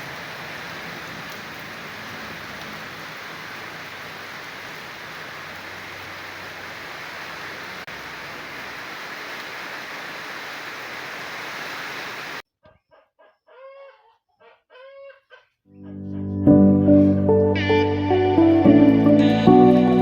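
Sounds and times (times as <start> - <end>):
steady hiss: 0.0 - 12.4
chicken calling: 12.6 - 16.4
guitar music: 15.9 - 20.0.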